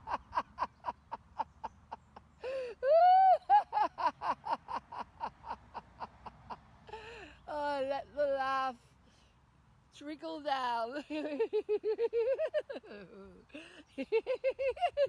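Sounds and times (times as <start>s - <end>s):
woman laughing: 0.0s - 7.3s, 10.9s - 15.0s.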